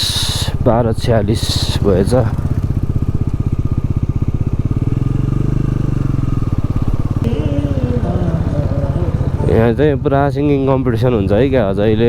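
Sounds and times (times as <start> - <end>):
motorcycle engine running: 0.0 - 12.0
person singing: 7.2 - 9.8.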